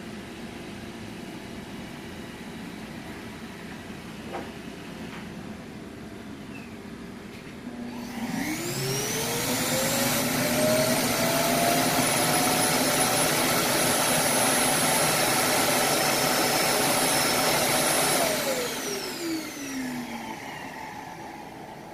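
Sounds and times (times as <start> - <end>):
suction motor whining: 7.9 - 21.8.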